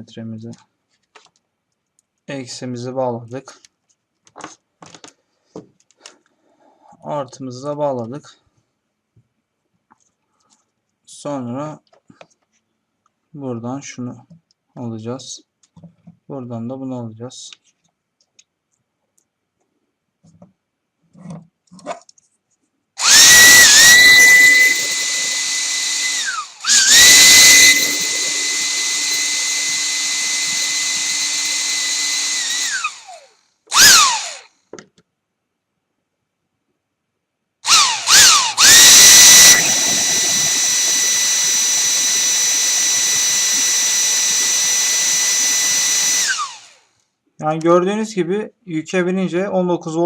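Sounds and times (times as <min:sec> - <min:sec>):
small fan motor whining: 0:23.0 - 0:34.5, 0:37.7 - 0:46.9.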